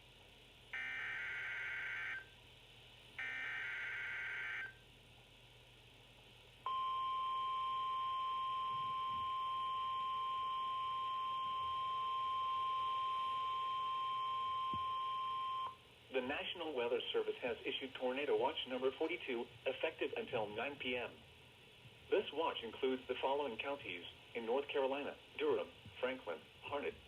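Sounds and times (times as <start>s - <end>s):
steady warning alarm tone: 0.8s - 2.4s, 3.2s - 4.8s, 6.7s - 15.8s.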